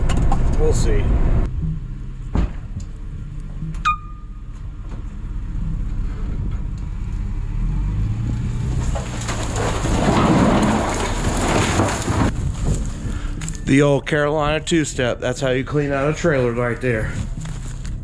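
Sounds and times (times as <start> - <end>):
truck road rumble: 0.0 - 18.0
rough rushing crackling noise: 8.6 - 13.3.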